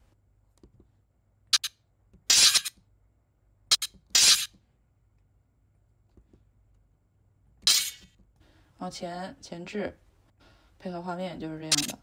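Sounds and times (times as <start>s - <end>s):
sword drawn from sheath: 2.3s - 2.8s, 3.7s - 4.5s, 7.6s - 8.1s.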